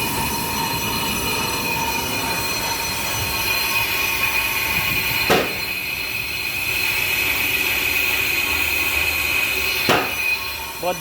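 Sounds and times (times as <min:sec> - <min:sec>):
brake lathe metallic squeal: 0:00.0 - 0:11.0
sharp knock: 0:05.3 - 0:05.6, 0:09.9 - 0:10.2.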